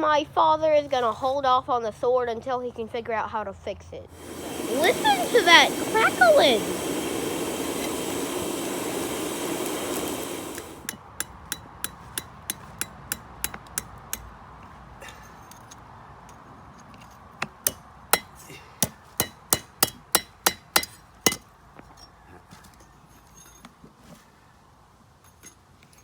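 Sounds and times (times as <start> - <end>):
steady rushing noise: 4.2 - 11.0
hammer striking steel on anvil: 10.9 - 14.3, 17.6 - 21.4.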